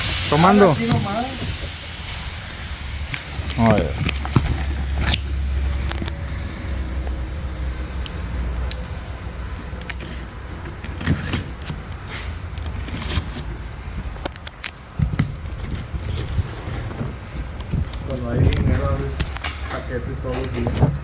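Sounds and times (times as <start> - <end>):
steady low rumble: 0.0 - 10.8.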